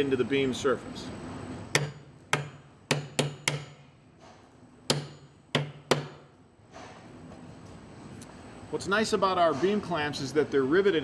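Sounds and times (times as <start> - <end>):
hammer striking metal clamp: 1.7 - 6.3.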